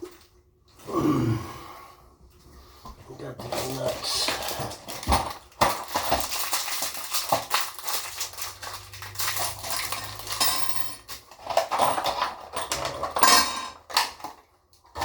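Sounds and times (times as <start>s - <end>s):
small metal parts clinking: 3.4s - 14.4s.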